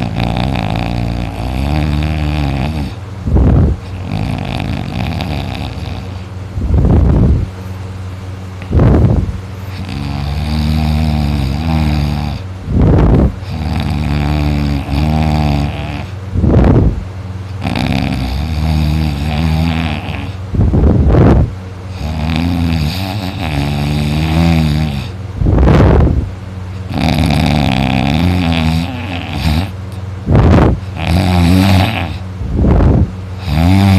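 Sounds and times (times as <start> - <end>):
person snoring: 0.0 - 6.2, 9.7 - 16.8, 17.6 - 20.4, 21.9 - 26.0, 26.9 - 29.8, 30.4 - 33.9.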